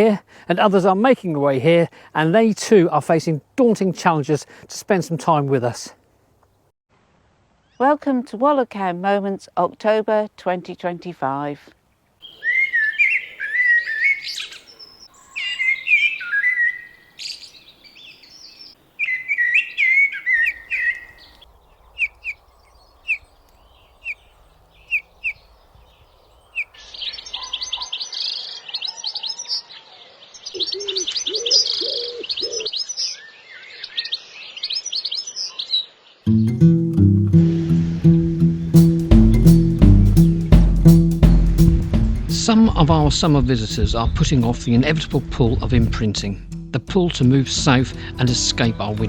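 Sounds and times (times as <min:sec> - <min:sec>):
birds warbling song: 0:11.9 - 0:36.7
birds chattering: 0:12.2 - 0:29.3, 0:30.2 - 0:36.5
lower bird calls: 0:12.2 - 0:36.5.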